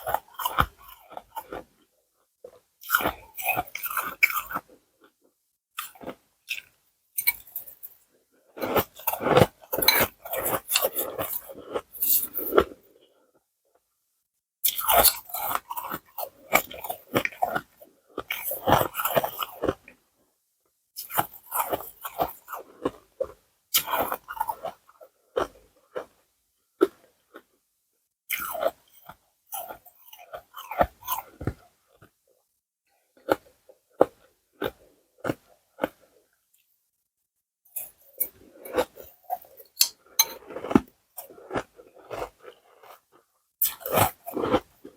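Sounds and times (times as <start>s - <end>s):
ice being chewed: 0.0s - 1.9s, 2.5s - 5.2s, 5.8s - 13.0s, 14.6s - 20.0s, 21.0s - 26.2s, 28.3s - 32.2s, 37.7s - 44.9s.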